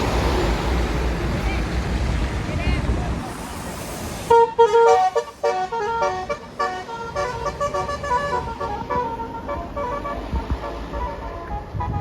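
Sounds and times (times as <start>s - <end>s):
bus horn playing a tune: 4.3s - 12.0s.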